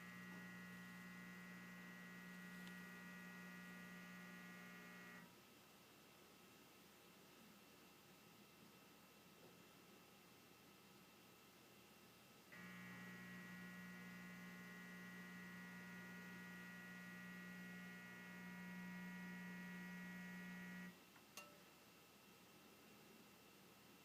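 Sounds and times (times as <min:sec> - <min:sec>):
electric heater humming: 0:00.0 - 0:05.3, 0:12.5 - 0:21.6.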